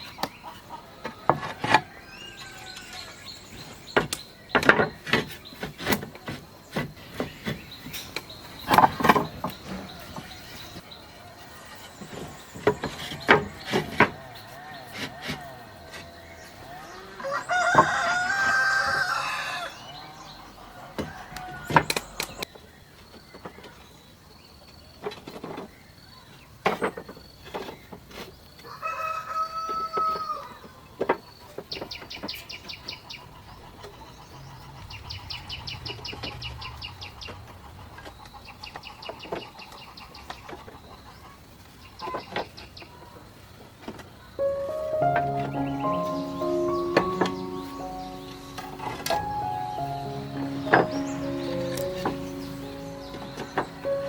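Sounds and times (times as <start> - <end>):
rooster crowing: 14.2 - 21.8, 28.7 - 30.6
sharp knocks: 45.0 - 54.0.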